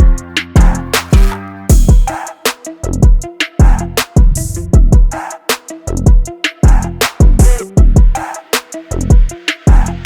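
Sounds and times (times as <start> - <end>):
sustained bass notes: 0.0 - 2.1, 2.9 - 5.1
electronic drum beat: 0.0 - 10.0.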